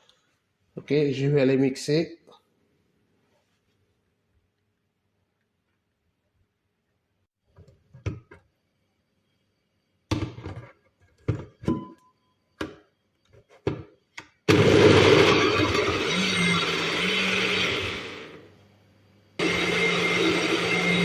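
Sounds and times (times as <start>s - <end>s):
blender running: 14.5s - 18.5s, 19.4s - 21.0s.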